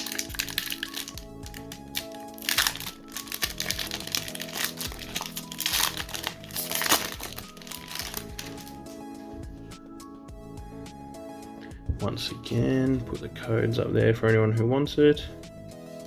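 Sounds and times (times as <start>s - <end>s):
foil wrapper crinkling: 0.0s - 8.9s
background music: 0.0s - 16.0s.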